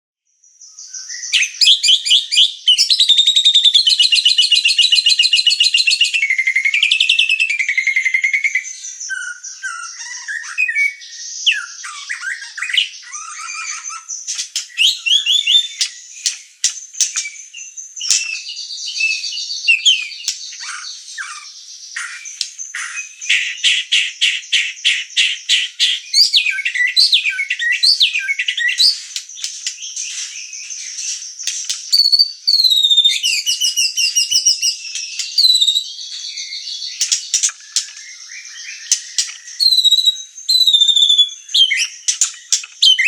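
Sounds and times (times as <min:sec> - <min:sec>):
songbird singing: 0:00.2 - 0:43.0.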